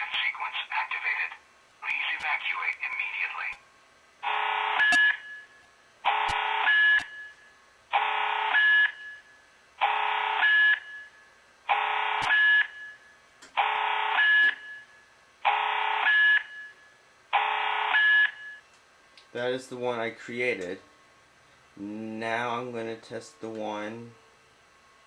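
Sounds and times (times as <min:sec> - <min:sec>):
fire alarm buzzing tone: 0:04.2 - 0:18.8.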